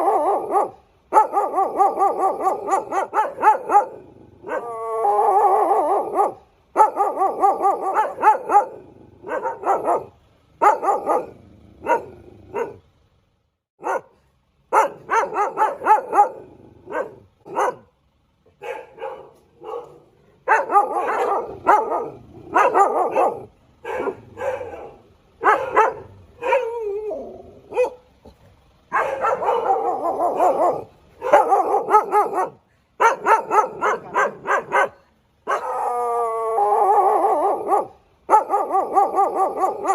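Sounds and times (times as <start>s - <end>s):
dog barking and yipping: 0.0s - 12.9s, 13.8s - 17.9s, 18.6s - 39.9s
dog whining: 1.4s - 8.7s, 20.5s - 28.0s.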